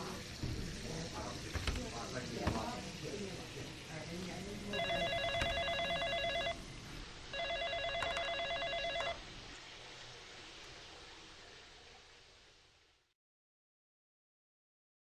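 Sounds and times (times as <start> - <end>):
low background hum: 1.5 - 13.1
telephone ringing electronic trill: 4.7 - 6.6, 7.3 - 9.2.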